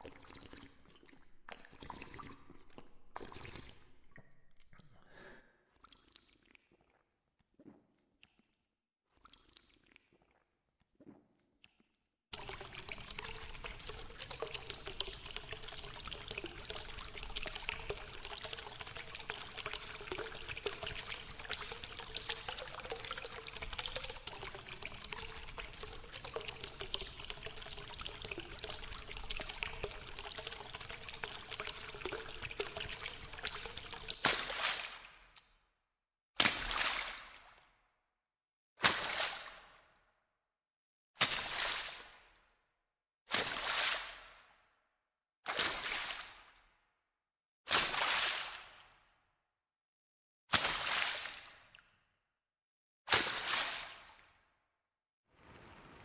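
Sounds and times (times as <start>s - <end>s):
water pouring and trickling: 0.0s - 5.2s, 12.3s - 35.2s, 55.3s - 56.0s.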